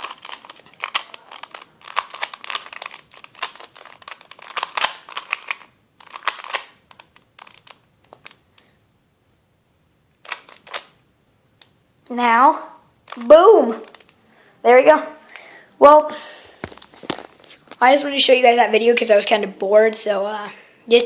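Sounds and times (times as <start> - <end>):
puzzle cube plastic layers clicking: 0.0 - 8.7, 10.2 - 11.0, 13.0 - 14.2.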